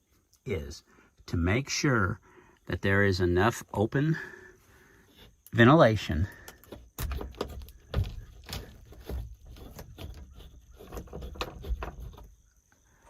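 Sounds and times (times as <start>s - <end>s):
soft thumps and knocks: 6.5s - 12.4s.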